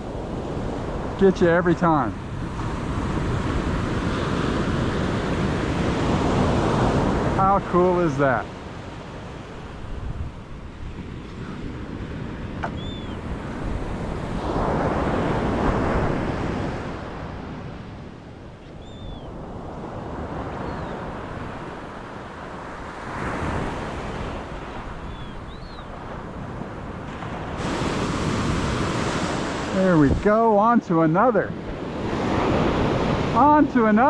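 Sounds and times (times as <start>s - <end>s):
surf breaking on beach: 0.0s - 34.0s.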